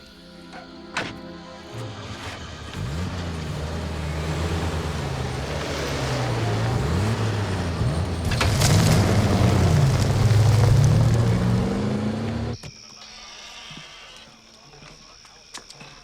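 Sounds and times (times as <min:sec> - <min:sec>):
vehicle engine revving: 0:01.7 - 0:12.6.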